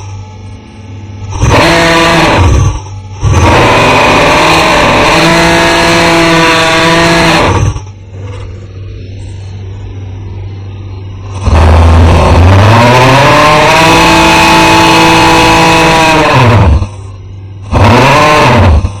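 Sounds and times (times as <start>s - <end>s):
steady low hum: 0.0s - 19.0s
person snoring loudly: 1.3s - 7.9s, 11.3s - 16.9s, 17.7s - 19.0s.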